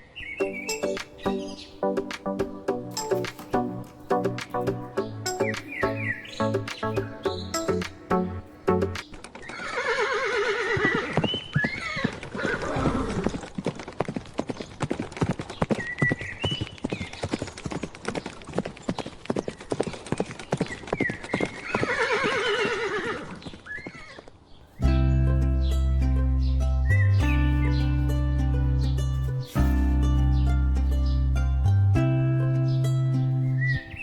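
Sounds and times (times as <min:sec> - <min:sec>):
horse whinnying: 0:09.5 - 0:11.2
hooves clip-clopping: 0:10.7 - 0:24.4.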